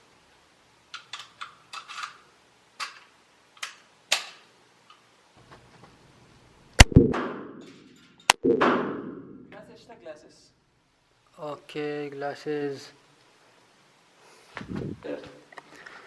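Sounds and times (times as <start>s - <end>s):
loud gunshot: 6.8s - 7.6s, 8.3s - 9.5s.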